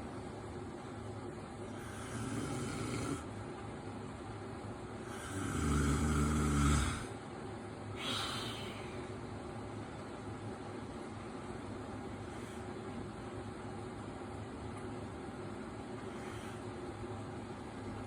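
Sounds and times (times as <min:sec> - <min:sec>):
soft airy breaths: 0:01.5 - 0:03.3, 0:07.9 - 0:09.5, 0:11.9 - 0:13.4, 0:15.8 - 0:17.6
man snoring: 0:01.8 - 0:03.3, 0:05.1 - 0:07.1.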